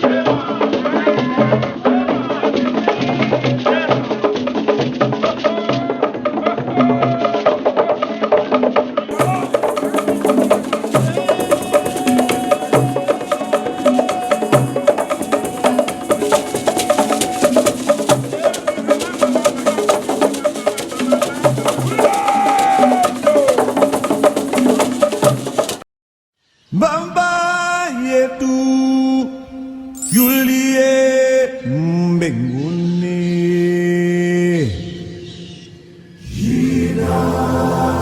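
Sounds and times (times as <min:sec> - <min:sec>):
music with percussion beat: 0:00.0 - 0:25.8, 0:30.0 - 0:30.9.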